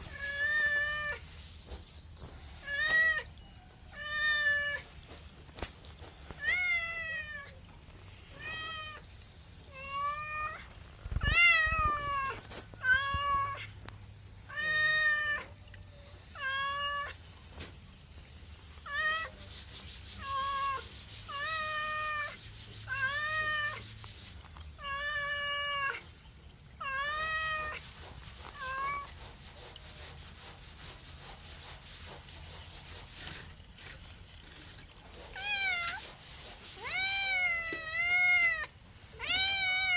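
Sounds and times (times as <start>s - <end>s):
cat meowing: 2.6s - 4.9s, 6.4s - 7.6s, 9.7s - 13.8s, 14.5s - 15.6s, 16.3s - 17.2s, 20.2s - 23.8s, 36.8s - 39.9s.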